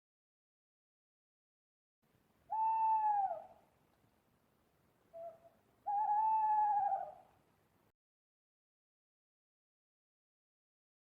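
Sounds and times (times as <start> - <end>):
owl hooting: 2.5 - 3.6, 5.1 - 7.3.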